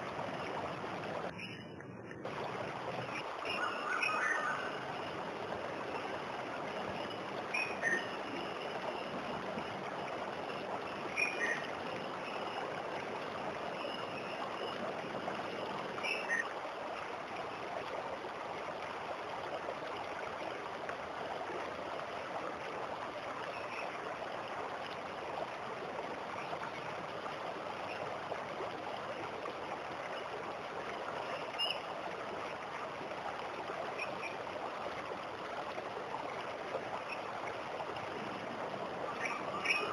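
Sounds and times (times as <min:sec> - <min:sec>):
bird chirps: 0:01.4 - 0:01.8.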